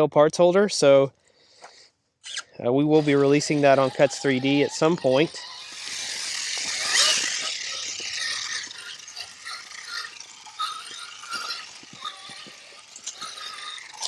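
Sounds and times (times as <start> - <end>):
toy car drivetrain whirring: 2.3 - 14.0
tyres and stones clicking on rock: 5.4 - 14.0.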